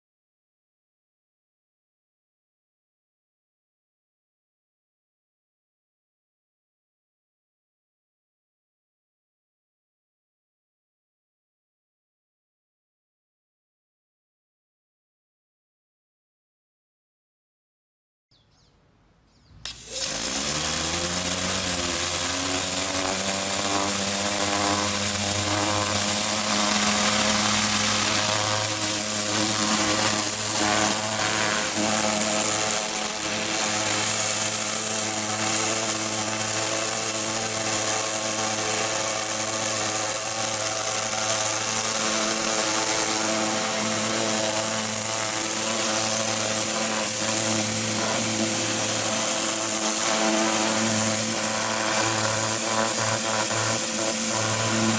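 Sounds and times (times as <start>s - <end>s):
high-pressure water spray hissing: 19.6s - 54.9s
pressure washer engine humming: 19.6s - 54.9s.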